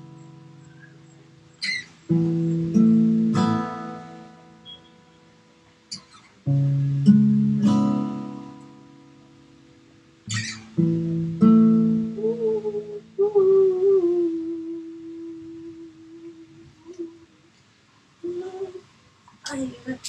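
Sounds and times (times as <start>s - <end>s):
acoustic guitar strums: 0.0s - 13.3s.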